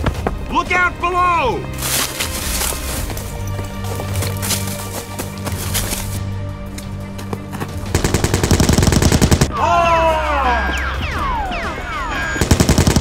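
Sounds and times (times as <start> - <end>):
background music with low drone: 0.0 - 13.0
machine-gun fire: 7.9 - 9.5, 12.4 - 13.0
falling whistle-like tones: 10.4 - 12.4.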